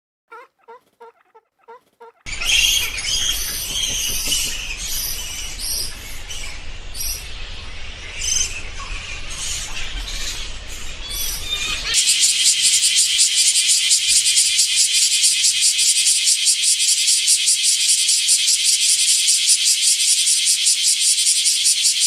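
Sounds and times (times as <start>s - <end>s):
fowl calling: 0.3s - 3.0s, 11.9s - 22.0s
high-pitched chirping chorus: 11.8s - 22.0s.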